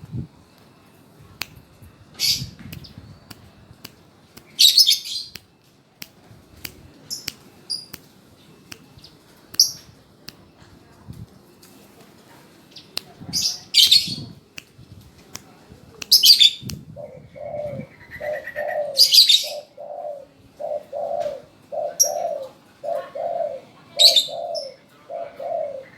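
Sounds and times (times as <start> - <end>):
birds chirping: 4.0 - 5.4, 6.9 - 10.6, 16.1 - 25.9
faint sharp clicks: 5.3 - 10.5.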